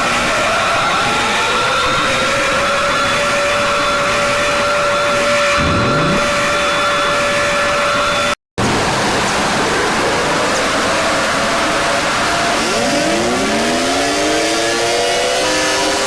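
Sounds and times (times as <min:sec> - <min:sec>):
siren winding up: 0:05.5 - 0:06.7, 0:11.9 - 0:16.0
loud static hiss: 0:05.6 - 0:06.6, 0:08.6 - 0:14.1.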